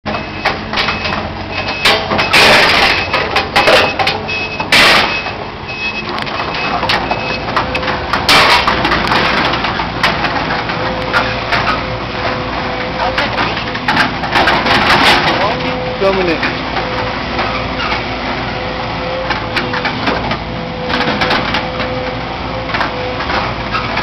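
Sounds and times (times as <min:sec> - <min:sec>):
reversing alarm beeping: 0:00.1 - 0:07.9
diesel engine rumbling: 0:00.1 - 0:24.0
debris crunching and crashing: 0:00.5 - 0:05.3, 0:06.1 - 0:18.3.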